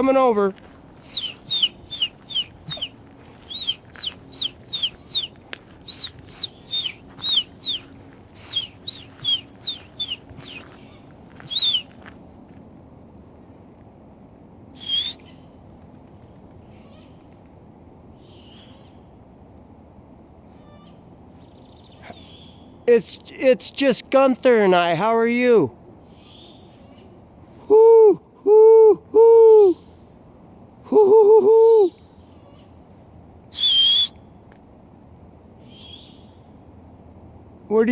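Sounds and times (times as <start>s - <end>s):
high downward-sliding bird calls: 0.0s - 12.0s, 14.8s - 15.6s.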